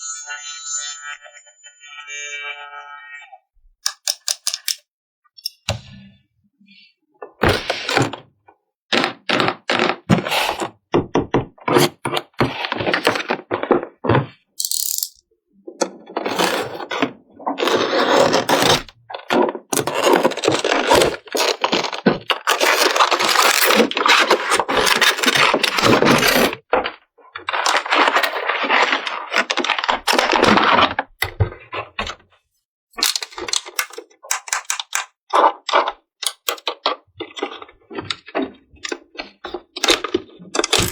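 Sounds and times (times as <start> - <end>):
plastic toy pieces clicking: 3.8 - 4.8, 14.6 - 15.2, 33.0 - 38.2, 39.8 - 40.9
plastic pieces rattling and scraping: 11.6 - 15.2, 15.8 - 32.2, 33.0 - 40.9.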